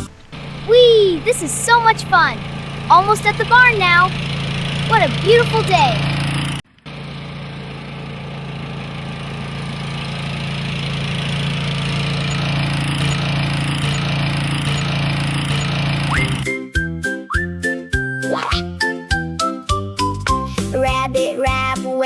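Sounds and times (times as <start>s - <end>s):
engine humming: 0.0s - 21.7s
children's tune with chimes: 16.2s - 22.0s.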